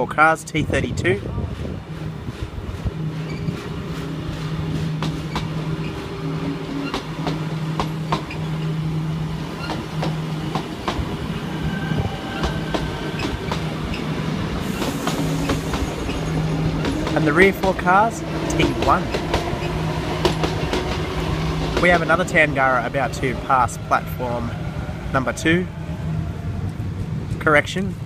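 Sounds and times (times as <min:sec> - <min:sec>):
electric train hum: 0:00.6 - 0:28.0.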